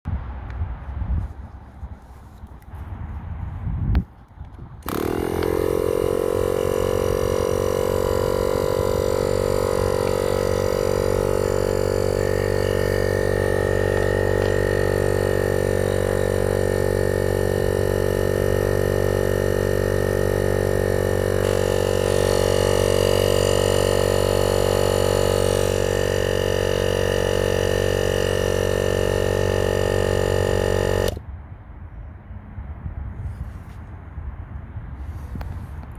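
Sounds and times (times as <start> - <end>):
air compressor running: 4.8 - 31.2.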